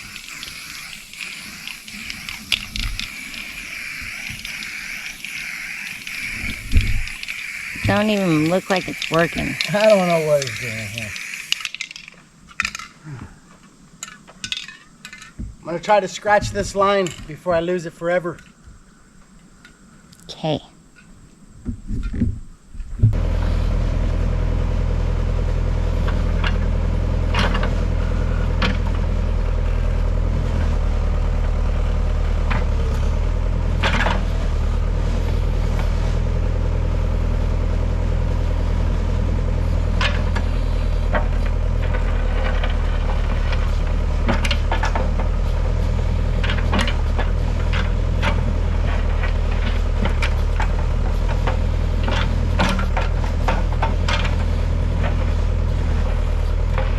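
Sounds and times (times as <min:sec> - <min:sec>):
backhoe engine running: 0:00.0 - 0:11.6, 0:23.1 - 0:56.9.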